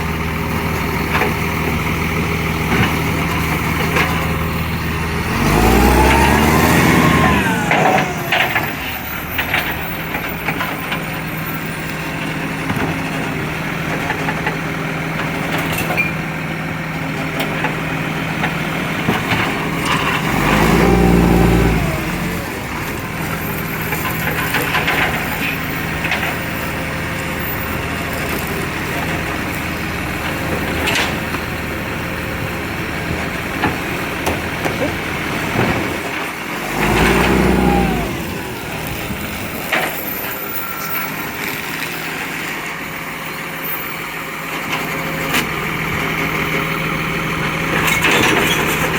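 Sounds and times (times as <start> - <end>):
diesel engine revving: 0.0 - 48.9
knocks and clanks: 23.9 - 26.4, 32.4 - 38.1.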